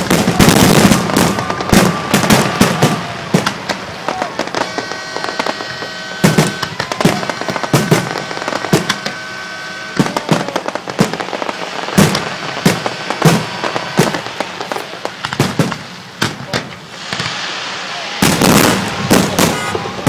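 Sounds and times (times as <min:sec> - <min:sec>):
fireworks booming: 0:00.0 - 0:20.0
fireworks crackling: 0:00.0 - 0:20.0.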